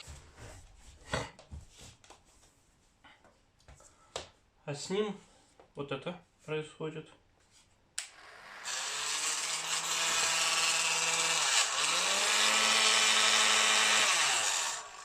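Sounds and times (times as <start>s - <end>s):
heat gun fan motor running: 8.2s - 15.0s.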